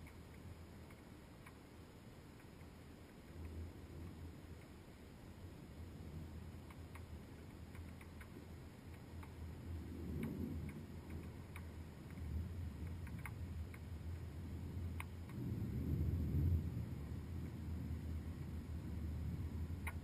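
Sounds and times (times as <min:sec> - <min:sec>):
muffled storm rumble: 0:03.2 - 0:20.0
raindrops ticking on housing: 0:05.9 - 0:20.0.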